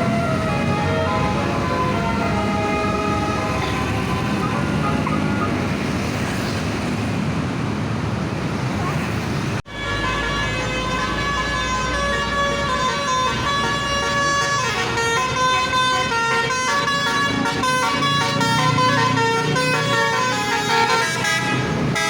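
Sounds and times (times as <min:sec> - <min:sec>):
bus engine and road noise: 0:00.0 - 0:22.0
multi-tone bus air horn: 0:09.7 - 0:22.0.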